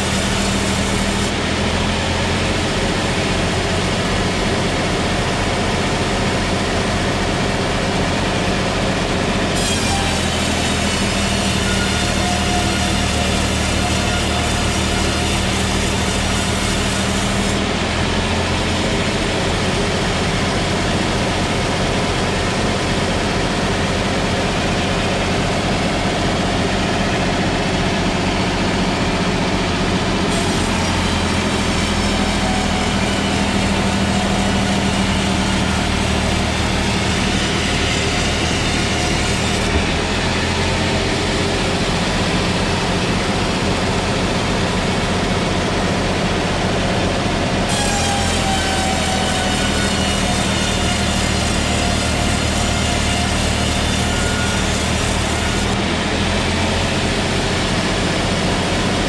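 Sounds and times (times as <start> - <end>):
saw cutting log hiss: 9.6 - 17.6, 30.3 - 39.9.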